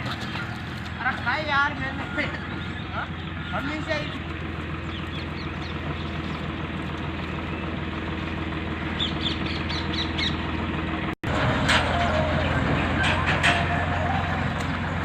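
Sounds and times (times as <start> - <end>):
small birds chirping: 0.0 - 10.8
low mechanical hum: 0.0 - 15.0.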